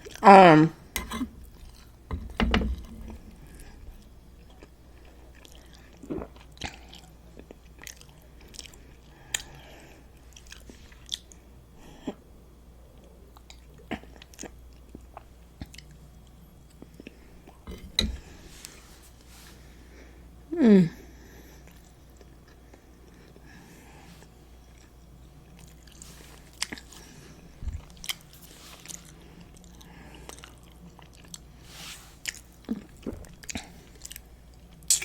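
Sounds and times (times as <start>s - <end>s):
chewing and crunching food: 3.2s - 11.5s, 12.9s - 17.6s, 24.2s - 35.0s.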